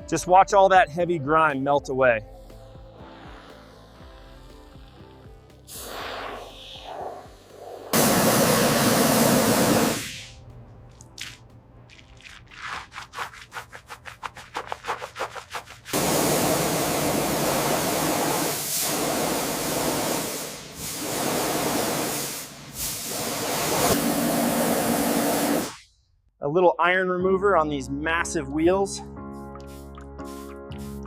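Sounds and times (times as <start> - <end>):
pressure washer spraying: 2.3 - 10.4, 11.2 - 25.8.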